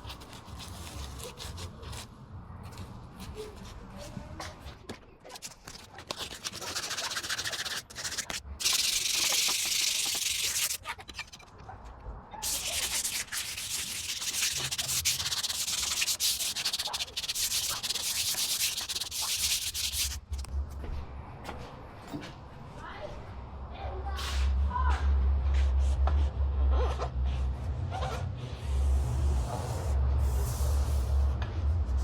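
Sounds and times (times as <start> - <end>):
hand sanding a hard surface: 5.4 - 11.4, 12.4 - 20.4.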